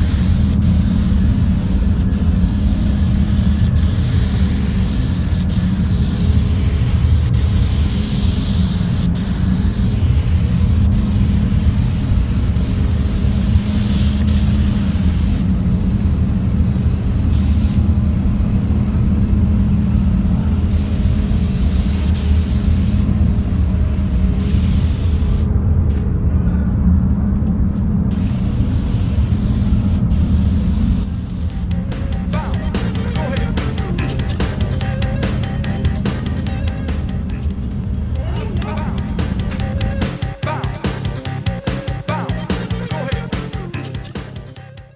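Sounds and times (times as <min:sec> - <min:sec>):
paint spray gun hissing: 0:00.0 - 0:15.5, 0:17.4 - 0:17.8, 0:20.7 - 0:23.1, 0:24.4 - 0:25.5, 0:28.1 - 0:37.6, 0:38.6 - 0:44.6
steady low hum: 0:00.0 - 0:44.6.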